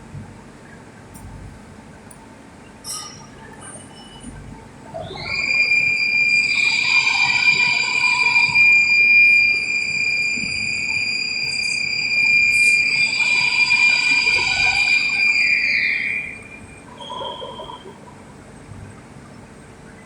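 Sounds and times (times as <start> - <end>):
lathe high-pitched whine: 5.0 - 18.0.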